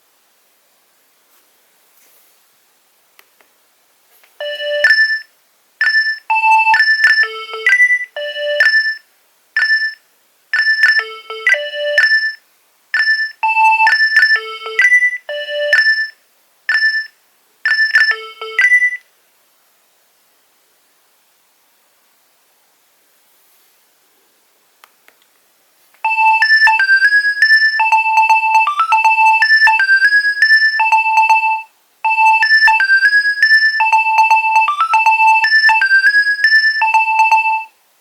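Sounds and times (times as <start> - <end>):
mobile phone ringtone: 4.4 - 9.0, 9.6 - 12.4, 13.0 - 19.0, 26.0 - 37.8.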